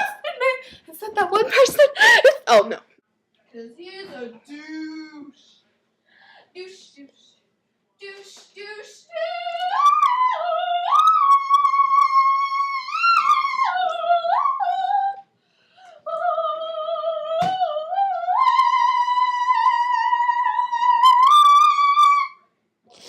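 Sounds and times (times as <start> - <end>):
high voice singing without words: 8.0 - 15.3, 16.0 - 22.5.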